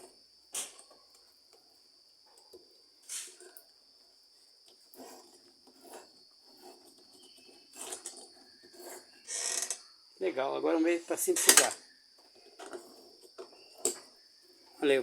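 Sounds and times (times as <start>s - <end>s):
hands scraping drive belt: 4.9s - 9.3s.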